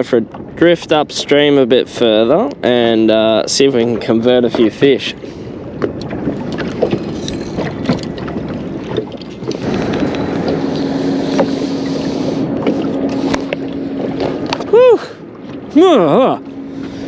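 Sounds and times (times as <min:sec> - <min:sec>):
water: 0:00.0 - 0:17.0
wind on microphone: 0:00.0 - 0:17.0
steady low hum: 0:05.1 - 0:17.0.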